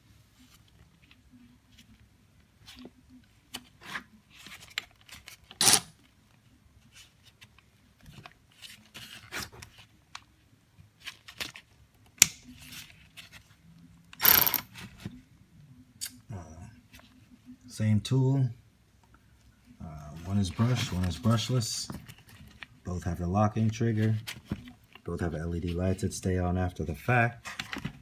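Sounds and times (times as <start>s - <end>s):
ratchets being handled: 14.2s - 14.6s.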